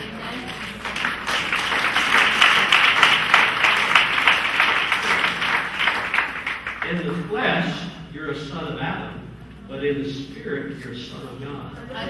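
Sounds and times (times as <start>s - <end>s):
congregation applauding: 0.0s - 7.2s.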